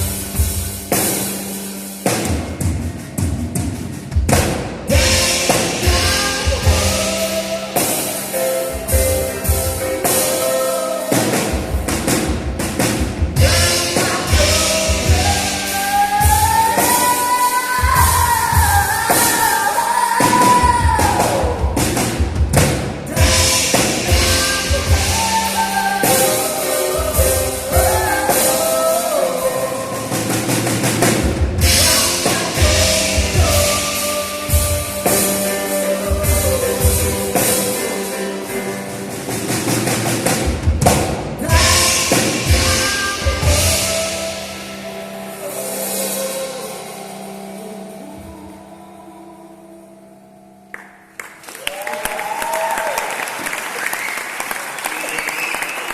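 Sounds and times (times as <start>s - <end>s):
drum kit playing: 0.0s - 48.6s
held piano and keyboard notes: 0.0s - 50.7s
audience applause and cheer: 50.7s - 55.9s.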